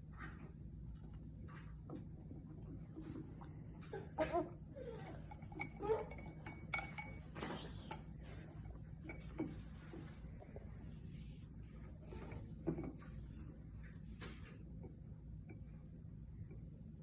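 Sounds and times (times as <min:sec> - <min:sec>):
child sipping water: 0:02.1 - 0:04.6
cup clinks and taps: 0:05.3 - 0:08.3, 0:09.0 - 0:10.0.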